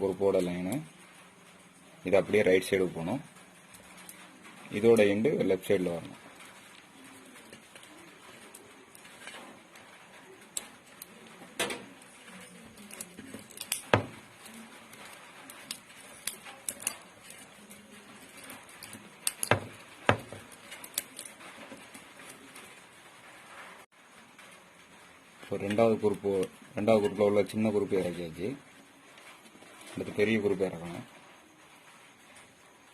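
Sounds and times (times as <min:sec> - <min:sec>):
copper wire clicking and rustling: 0:00.0 - 0:23.3.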